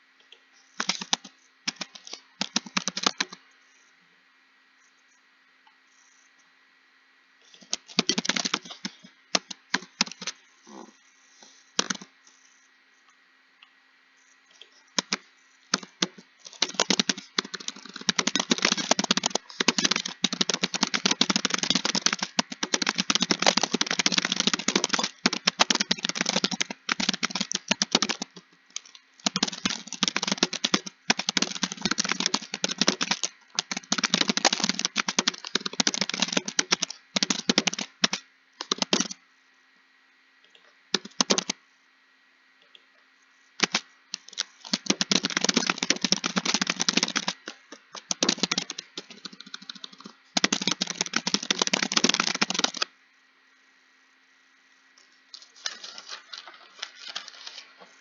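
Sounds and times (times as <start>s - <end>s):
fast keyboard typing: 0.8s - 3.4s, 7.6s - 10.4s, 11.8s - 12.1s, 15.0s - 39.2s, 41.0s - 41.6s, 43.6s - 52.9s, 55.4s - 57.6s.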